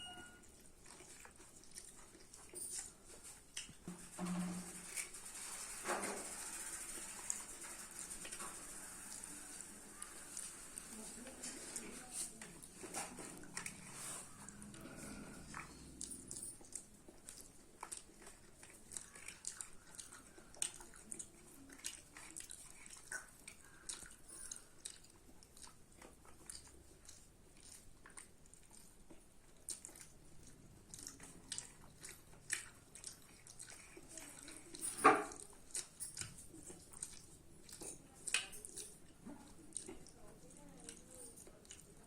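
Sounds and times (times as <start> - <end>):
person chewing food: 0.0 - 42.0
wet mouth clicks and smacks: 15.5 - 34.0.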